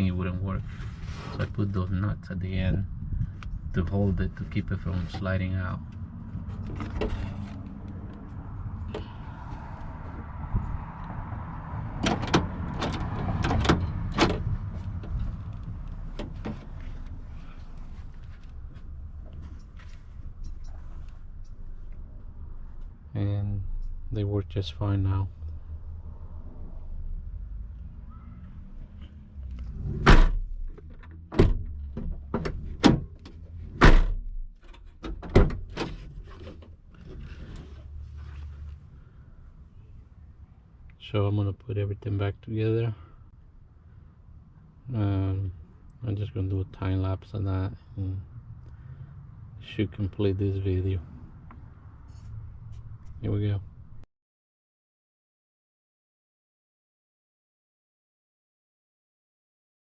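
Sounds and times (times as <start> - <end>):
door thuds: 30.0 - 30.4, 31.3 - 33.1, 33.8 - 34.4.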